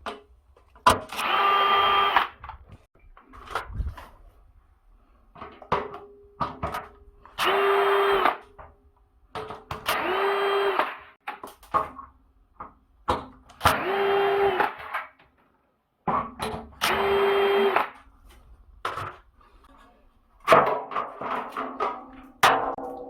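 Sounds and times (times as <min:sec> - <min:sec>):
small electric motor whining: 0:01.2 - 0:02.4, 0:10.0 - 0:11.0.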